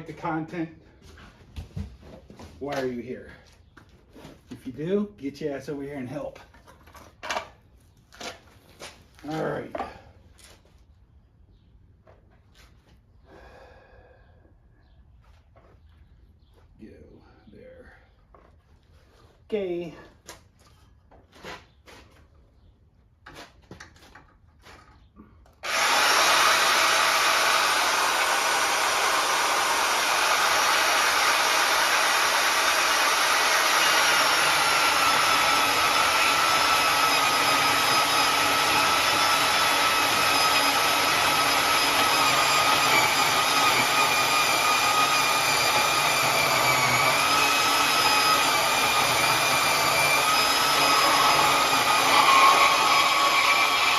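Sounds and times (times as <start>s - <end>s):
power tool cutting: 25.6s - 53.9s.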